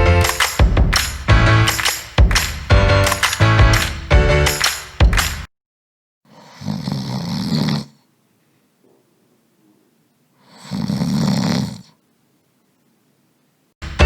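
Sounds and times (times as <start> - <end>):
person snoring: 6.3 - 8.0, 10.4 - 12.0.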